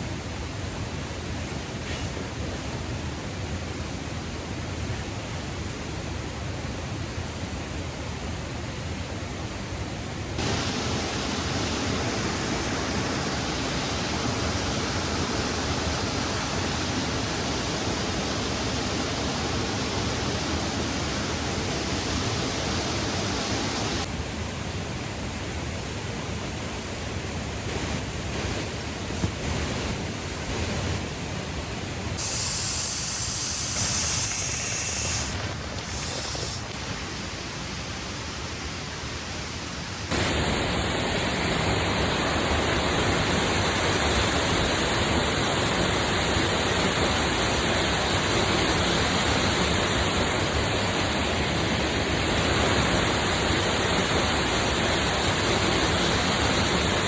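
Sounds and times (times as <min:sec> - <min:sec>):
rushing water and rain: 0:08.6 - 0:32.2, 0:36.7 - 0:57.0.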